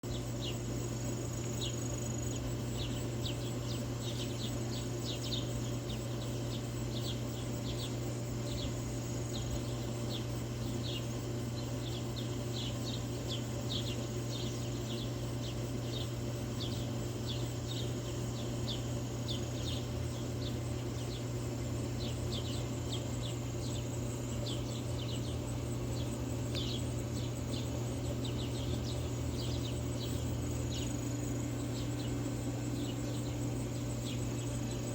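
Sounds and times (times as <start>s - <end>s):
birds chirping: 0.0s - 34.9s
constant low hum: 0.0s - 34.9s.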